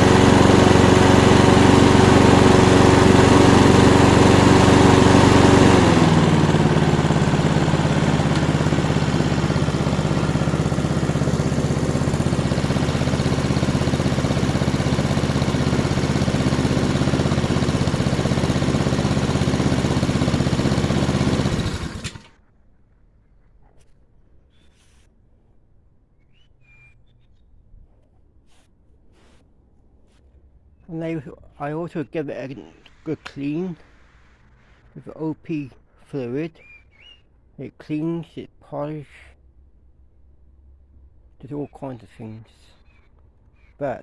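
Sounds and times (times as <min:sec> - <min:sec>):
lawnmower engine running: 0:00.0 - 0:22.4.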